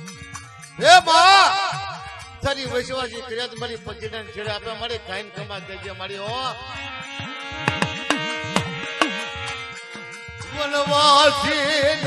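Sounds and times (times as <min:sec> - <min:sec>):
steady held notes: 0:04.0 - 0:11.4
hand drum beating: 0:07.6 - 0:09.2.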